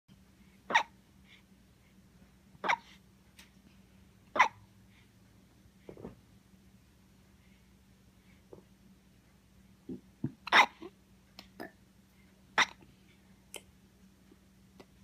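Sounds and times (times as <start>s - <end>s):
person hiccuping: 9.9s - 10.9s, 12.6s - 12.8s.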